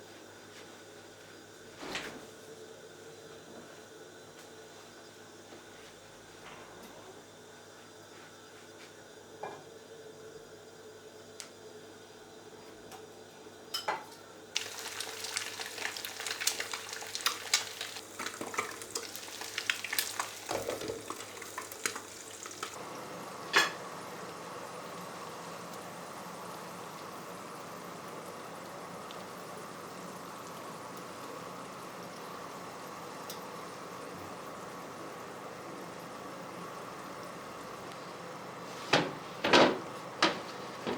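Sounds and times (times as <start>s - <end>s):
steady hiss: 14.6s - 28.1s.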